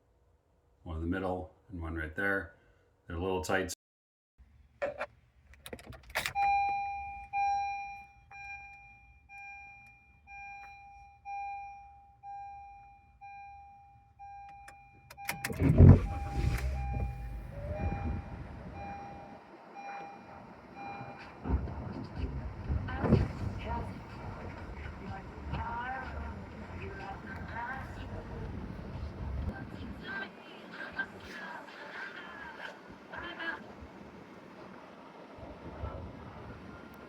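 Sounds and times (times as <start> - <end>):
dashboard warning chime beeping: 6.2 - 21.9.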